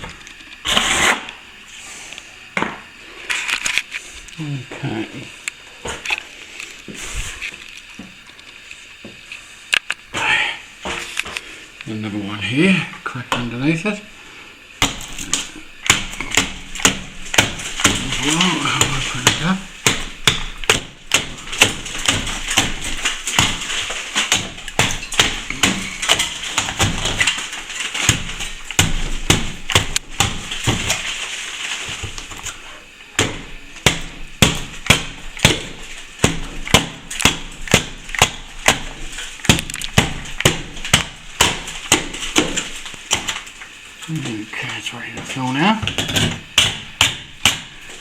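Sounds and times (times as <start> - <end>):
plaster scratching: 0.6 - 1.4, 14.8 - 43.6
hand tool tapping plaster: 13.1 - 14.0, 14.8 - 32.6, 33.2 - 43.6, 44.2 - 48.0.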